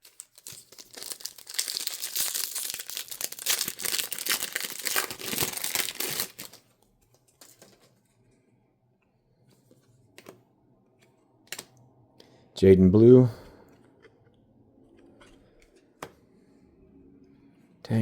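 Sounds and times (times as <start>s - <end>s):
foil wrapper tearing and crinkling: 0.0s - 6.6s.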